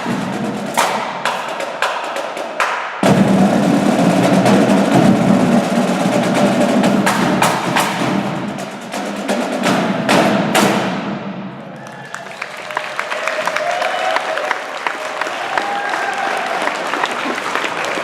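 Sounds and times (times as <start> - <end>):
marching drum line playing: 0.0 - 11.8.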